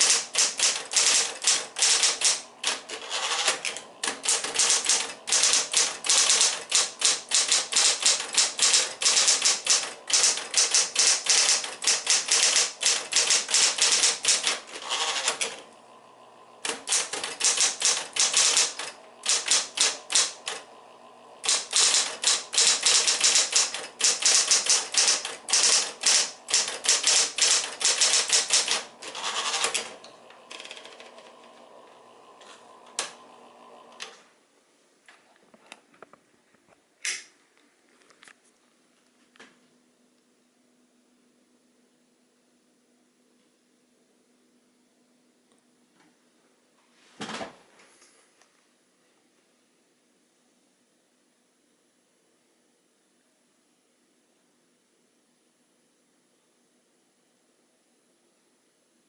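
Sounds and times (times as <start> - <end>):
electric typewriter key strikes: 0.0 - 15.6, 16.6 - 20.7, 21.4 - 31.2
typewriter motor hum: 0.0 - 34.2.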